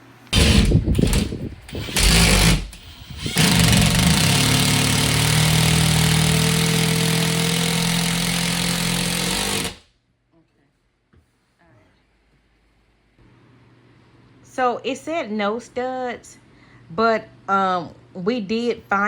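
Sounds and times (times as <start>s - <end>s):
power drill whining: 0.3s - 9.8s.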